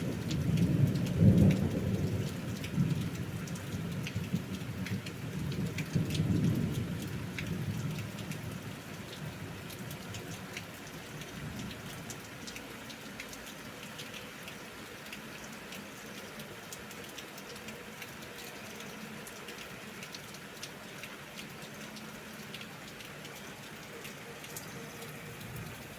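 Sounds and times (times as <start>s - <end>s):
raindrops ticking on a surface: 0.0s - 25.9s
steady rain: 0.0s - 25.9s.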